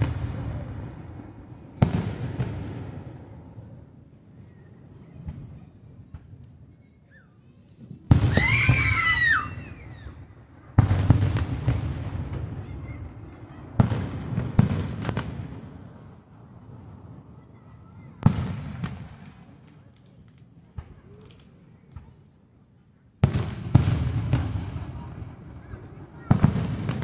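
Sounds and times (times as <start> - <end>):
fireworks booming: 0.0 - 3.8, 8.1 - 17.2, 18.0 - 19.6, 23.2 - 27.0.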